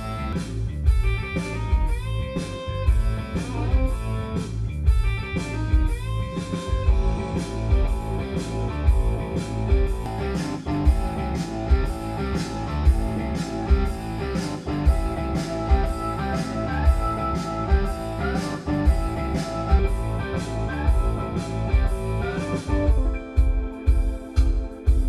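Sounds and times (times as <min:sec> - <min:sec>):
guitar music through loudspeaker: 0:00.0 - 0:25.0.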